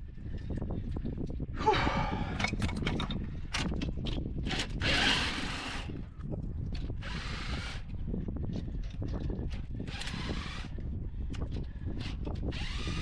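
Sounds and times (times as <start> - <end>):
rough low rumble: 0.0 - 4.0.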